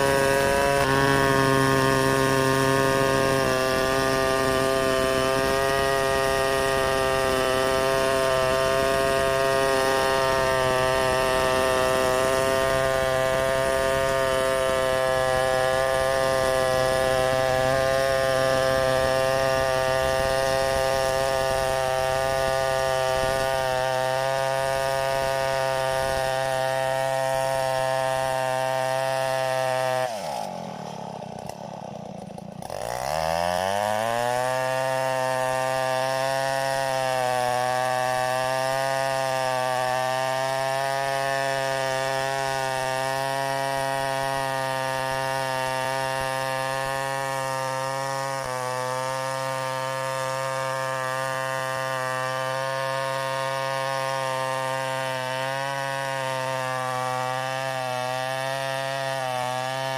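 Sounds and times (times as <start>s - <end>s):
chainsaw running at high revs: 0.0s - 59.9s.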